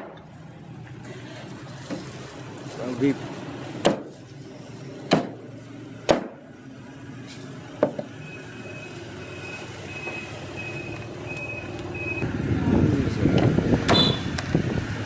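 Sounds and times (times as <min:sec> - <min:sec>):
cleaver chopping on wooden block: 0:03.8 - 0:04.1, 0:05.1 - 0:05.4, 0:06.1 - 0:06.4.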